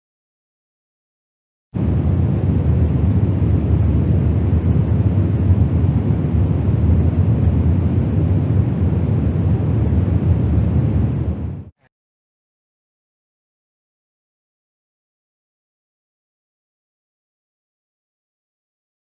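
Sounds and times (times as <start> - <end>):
car wind noise: 1.8 - 11.8.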